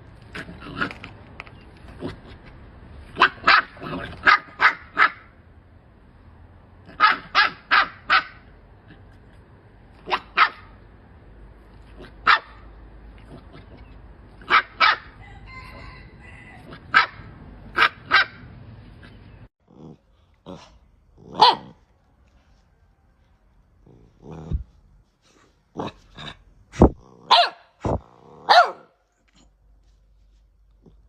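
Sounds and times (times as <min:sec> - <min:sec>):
dog barking: 0:03.2 - 0:05.3, 0:06.9 - 0:08.4, 0:10.0 - 0:10.8, 0:12.0 - 0:12.7, 0:14.4 - 0:15.2, 0:16.8 - 0:18.4, 0:21.3 - 0:21.8, 0:27.2 - 0:29.0.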